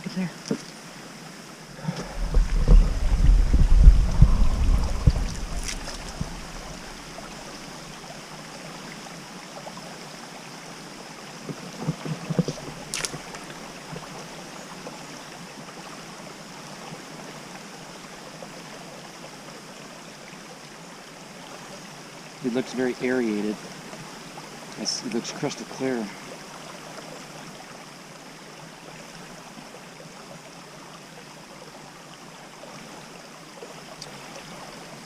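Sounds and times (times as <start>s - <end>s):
water running: 1.8s - 7.8s.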